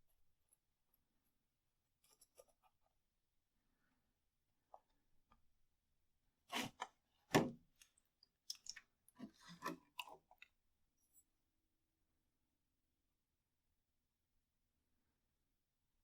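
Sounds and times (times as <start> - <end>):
hands scraping pots and soil: 6.5 - 7.0.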